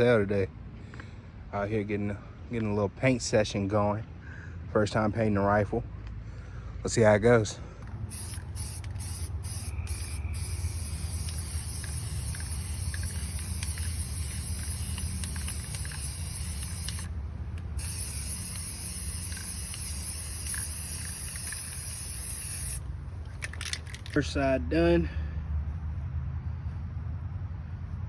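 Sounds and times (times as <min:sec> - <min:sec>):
spray paint can hissing: 0:08.1 - 0:24.2.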